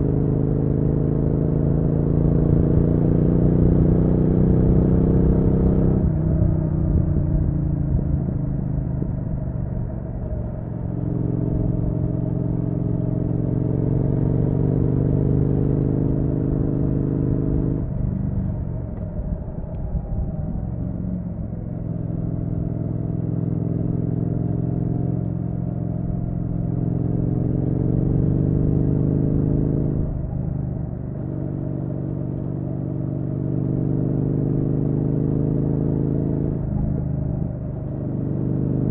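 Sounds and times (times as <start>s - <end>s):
motorcycle engine running: 0.0s - 38.9s.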